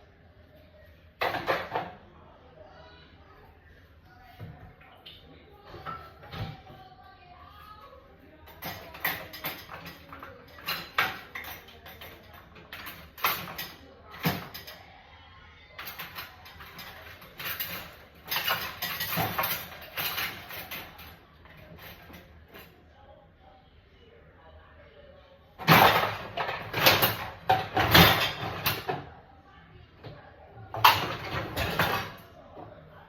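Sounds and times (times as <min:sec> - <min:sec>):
dishes clinking and clattering: 0:01.2 - 0:02.0, 0:04.4 - 0:06.8, 0:08.4 - 0:14.8, 0:15.8 - 0:22.7, 0:25.6 - 0:29.2, 0:30.0 - 0:32.7.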